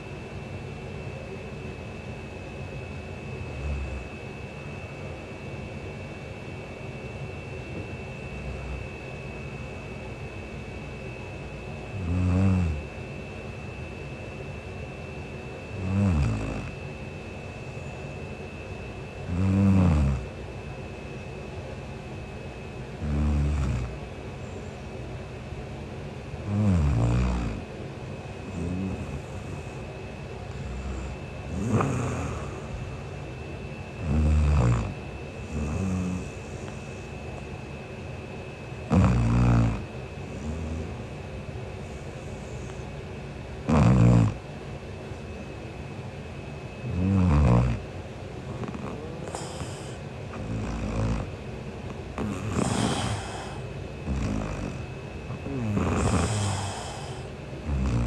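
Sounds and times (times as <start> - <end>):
woman snoring: 3.4 - 4.3, 8.2 - 9.0, 11.8 - 13.0, 15.7 - 16.8, 19.2 - 20.4, 23.0 - 24.1, 26.4 - 27.7, 28.4 - 33.3, 33.9 - 37.2, 38.9 - 41.2, 43.6 - 44.4, 46.8 - 58.0.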